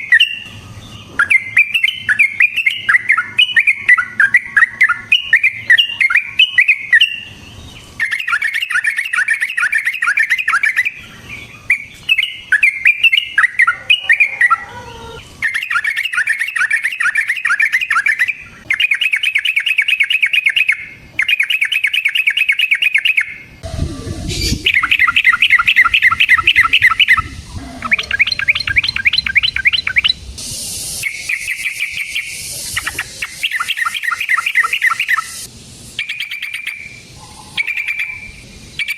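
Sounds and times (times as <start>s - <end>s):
low rumble: 23.6s - 31.0s
bird rattling chatter song: 24.3s - 38.9s.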